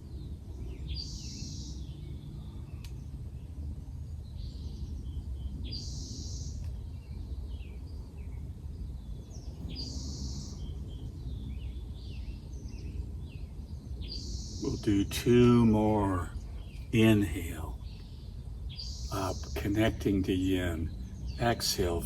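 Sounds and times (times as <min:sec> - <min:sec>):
songbird singing: 0:00.0 - 0:22.0
low outdoor rumble: 0:14.6 - 0:22.0.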